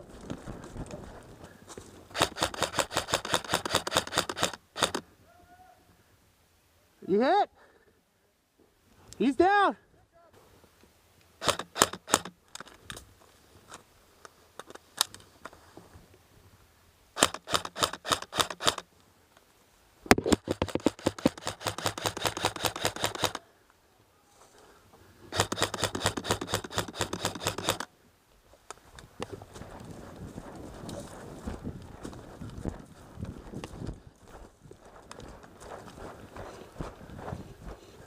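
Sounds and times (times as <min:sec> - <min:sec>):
airsoft guns firing rapid clicks: 0:02.1 - 0:05.0, 0:11.4 - 0:12.7, 0:17.2 - 0:18.8, 0:20.2 - 0:23.4, 0:25.3 - 0:27.9.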